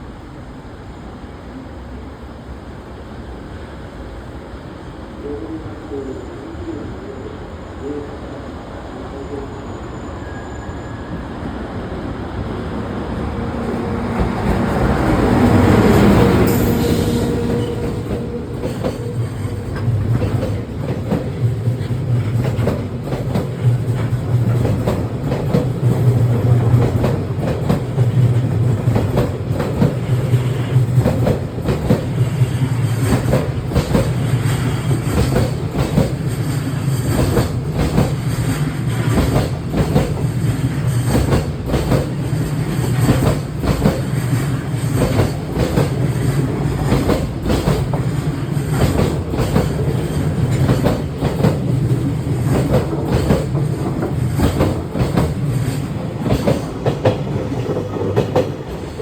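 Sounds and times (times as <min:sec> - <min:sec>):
freight train rumbling past: 0:00.0 - 0:59.0
wheels clickety-clack on rail joints: 0:12.8 - 0:59.0.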